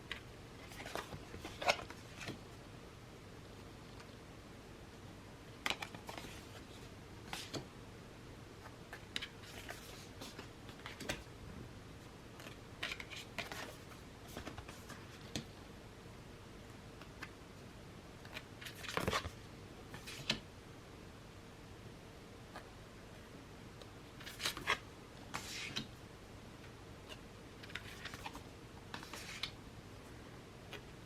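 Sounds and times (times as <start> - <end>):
cards clicking and rustling: 8.9 - 11.3, 12.4 - 15.5, 24.2 - 24.8, 27.6 - 29.6.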